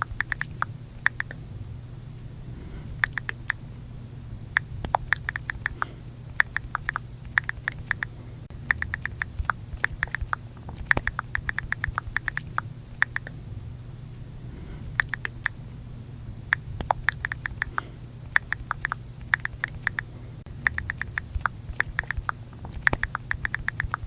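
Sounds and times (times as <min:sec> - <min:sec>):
faint low hum: 0:00.0 - 0:24.0.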